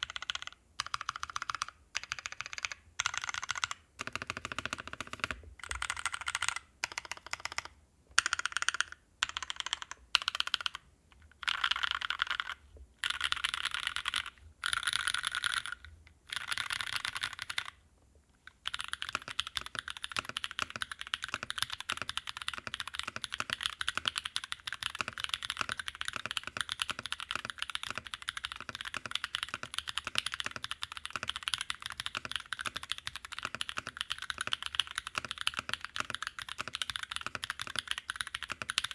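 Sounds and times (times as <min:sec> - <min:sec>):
mechanical keyboard typing: 0:00.0 - 0:10.8, 0:11.4 - 0:17.8, 0:18.6 - 0:38.9.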